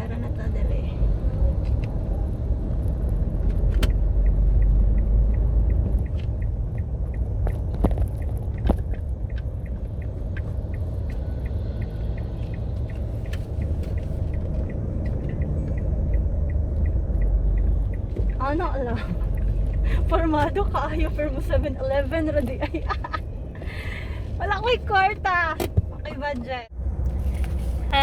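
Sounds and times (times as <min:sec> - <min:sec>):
truck engine and road rumble: 0:00.0 - 0:28.0
light repeating ticking: 0:01.1 - 0:23.4.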